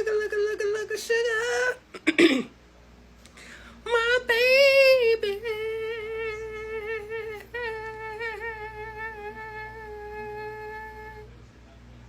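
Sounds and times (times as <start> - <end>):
woman humming: 0.0 - 2.1, 3.9 - 11.3.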